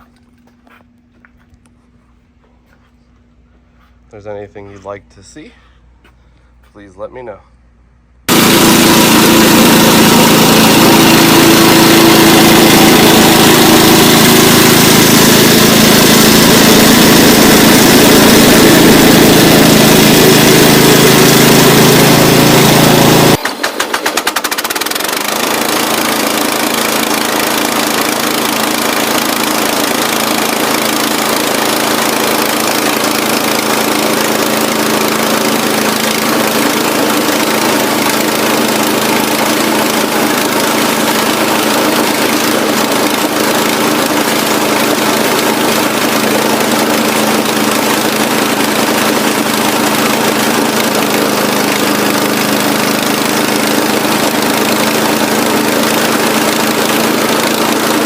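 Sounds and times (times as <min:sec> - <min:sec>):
lawn mower engine running: 0:08.3 - 0:58.0.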